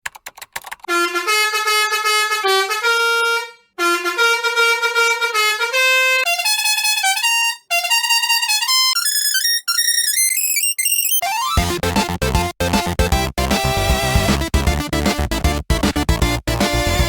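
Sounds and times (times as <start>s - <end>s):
brassy musical bus horn: 0.9s - 9.0s.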